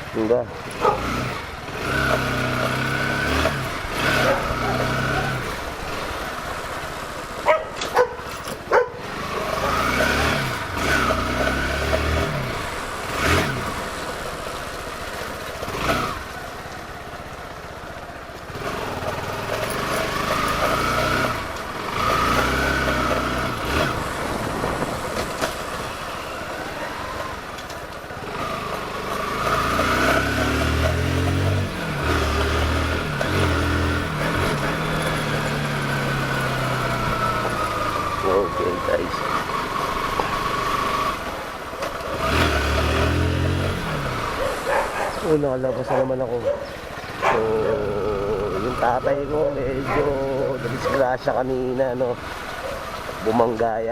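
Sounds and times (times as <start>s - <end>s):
motorcycle engine revving: 0.0s - 53.9s.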